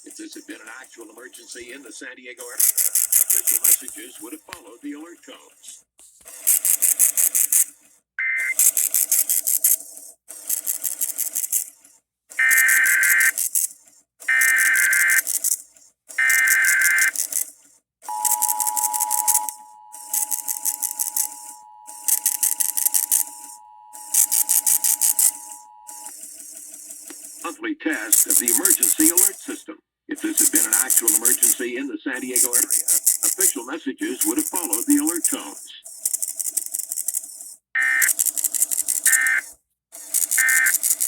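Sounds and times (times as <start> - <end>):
rhythmic buzzing: 0.0 - 4.5, 12.4 - 13.7, 14.3 - 15.6, 16.2 - 17.5, 18.1 - 41.0
two-tone attention signal: 8.2 - 8.7, 12.4 - 13.3, 14.3 - 15.3, 16.2 - 17.3, 18.1 - 26.1, 30.2 - 35.6, 37.8 - 38.2, 39.0 - 39.4, 40.3 - 40.8
warbling data bursts: 12.4 - 13.6, 14.3 - 15.6, 16.2 - 17.5, 18.1 - 37.2, 37.8 - 39.5, 40.1 - 41.0.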